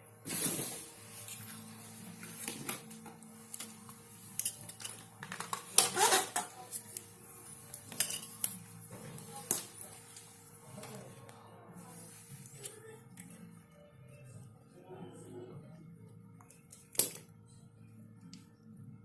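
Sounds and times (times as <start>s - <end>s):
metal tools clinking: 4.3s - 5.1s, 7.7s - 8.6s.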